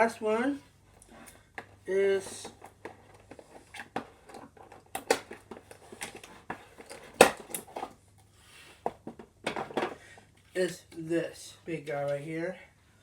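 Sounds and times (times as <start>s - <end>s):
plastic toy clicks and knocks: 2.4s - 7.9s.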